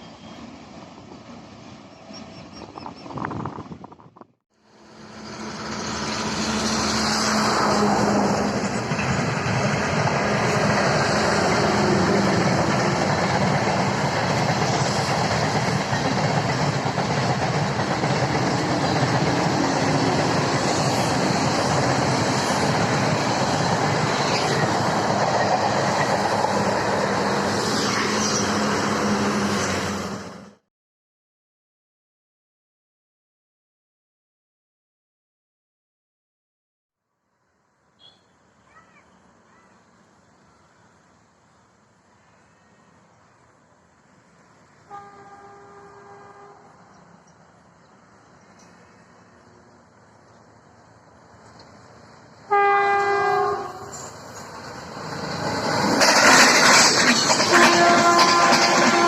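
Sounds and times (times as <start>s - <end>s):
train wheels on rails: 0.0s - 30.6s, 46.8s - 59.0s.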